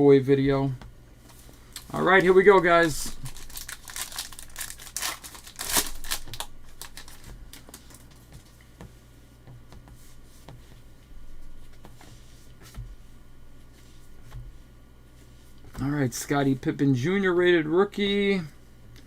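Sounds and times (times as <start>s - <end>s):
cards rustling and clicking: 1.2s - 8.7s
foil wrapper tearing and crinkling: 2.0s - 8.2s.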